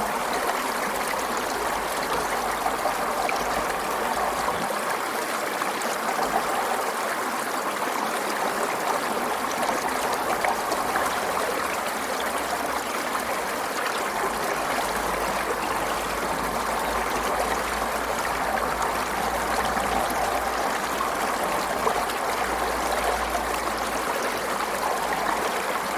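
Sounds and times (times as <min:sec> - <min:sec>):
stream flowing over stones: 0:00.0 - 0:25.9.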